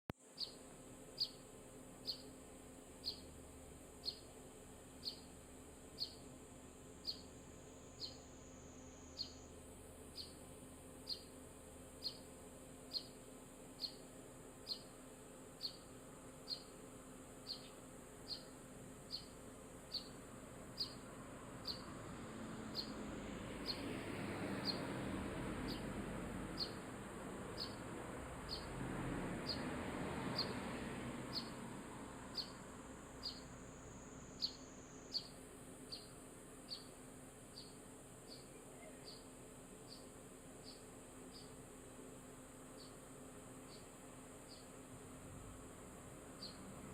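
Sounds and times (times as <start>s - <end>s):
sparrow chirping: 0.4s - 0.6s, 1.2s - 1.4s, 2.0s - 2.3s, 3.0s - 3.3s, 4.0s - 4.4s, 5.0s - 5.3s, 6.0s - 6.3s, 7.0s - 8.4s, 9.1s - 9.5s, 10.1s - 10.4s, 11.0s - 12.3s, 12.9s - 13.2s, 13.8s - 14.0s, 14.6s - 15.0s, 15.6s - 16.8s, 17.4s - 22.0s, 22.6s - 25.0s, 25.6s - 28.8s, 29.4s - 29.7s, 30.3s - 30.6s, 31.3s - 31.6s, 32.3s - 41.6s, 42.7s - 43.0s, 43.6s - 44.7s, 46.4s - 46.6s.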